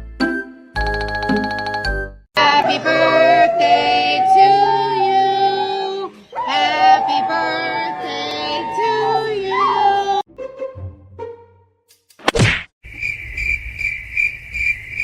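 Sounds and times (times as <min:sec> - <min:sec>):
synthetic sung voice with music: 0:02.4 - 0:10.2.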